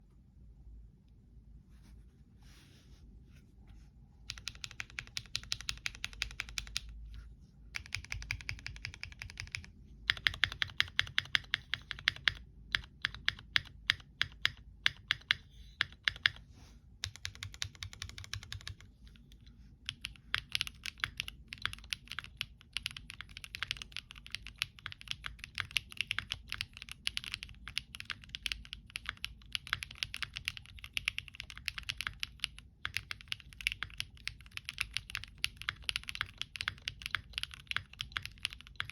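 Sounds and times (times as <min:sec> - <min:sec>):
mechanical keyboard typing: 0:04.3 - 0:07.0, 0:07.8 - 0:16.4, 0:17.0 - 0:19.3, 0:19.9 - 0:38.9.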